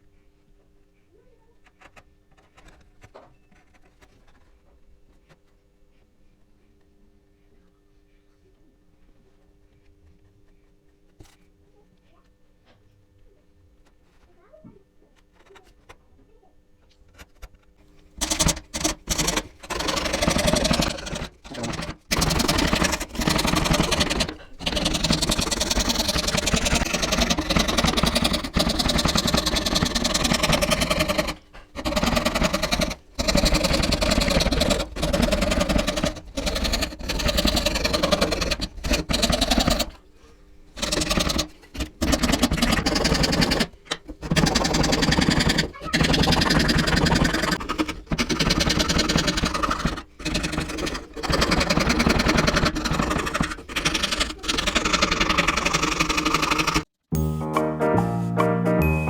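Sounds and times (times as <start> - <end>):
saw cutting wooden board: 18.2 - 40.0, 40.8 - 56.9.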